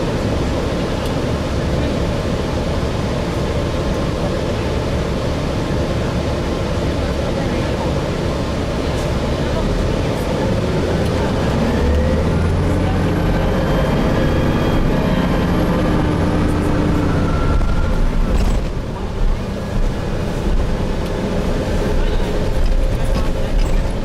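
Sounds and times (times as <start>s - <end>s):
bus engine rumble with whine: 0.0s - 24.0s.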